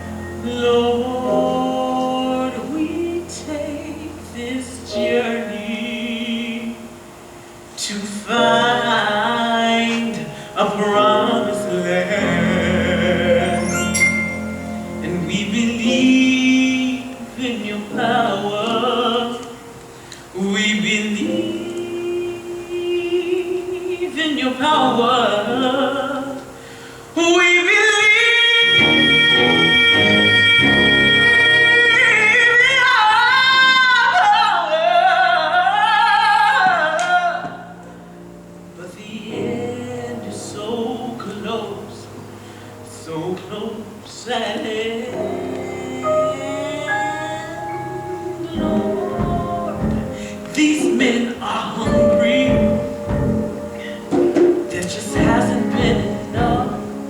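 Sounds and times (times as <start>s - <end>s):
person singing with vibrato: 0.0s - 7.2s, 7.8s - 57.0s
musical accompaniment: 0.0s - 34.2s, 36.6s - 57.0s
person singing long notes: 44.6s - 57.0s.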